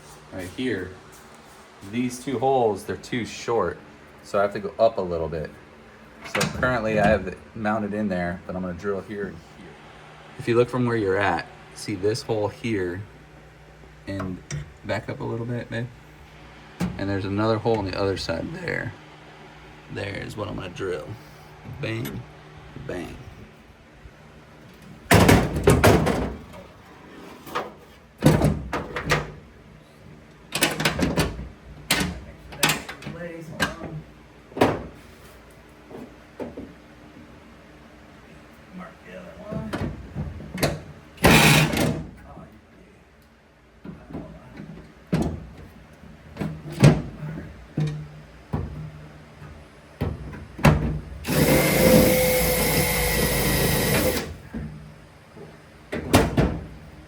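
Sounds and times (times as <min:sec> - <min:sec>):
power drill boring through metal: 0:41.3 - 0:41.7, 0:51.2 - 0:54.4.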